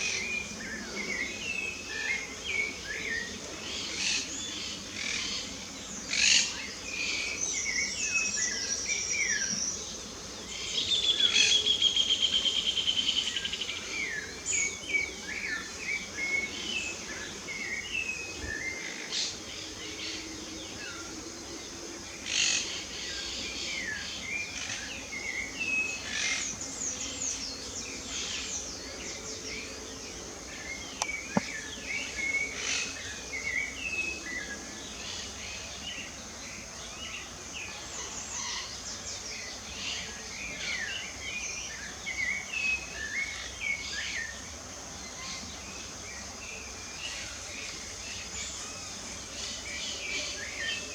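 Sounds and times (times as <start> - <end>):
songbirds chirping and whistling: 22.5 - 50.9.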